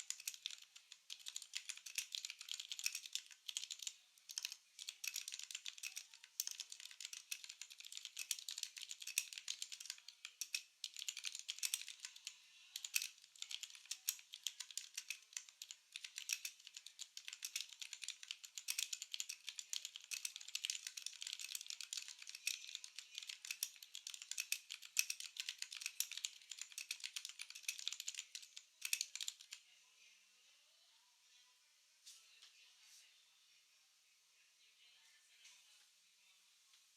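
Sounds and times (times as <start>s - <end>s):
mechanical keyboard typing: 0.0s - 29.6s.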